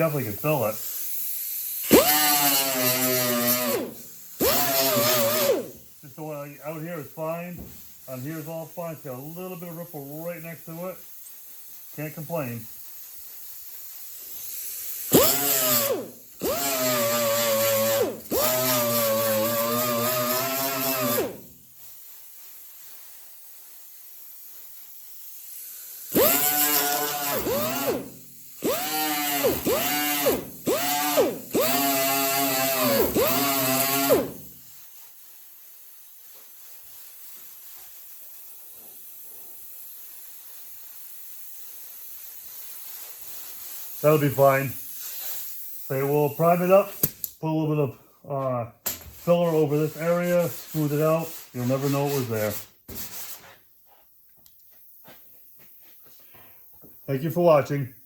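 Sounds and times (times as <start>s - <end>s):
power tool motor whining: 1.9s - 5.7s, 15.1s - 21.4s, 26.1s - 34.4s.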